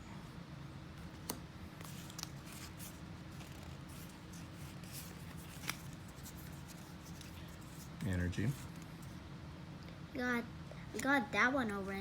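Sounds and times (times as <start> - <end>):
paper cards rustling: 1.1 - 9.2.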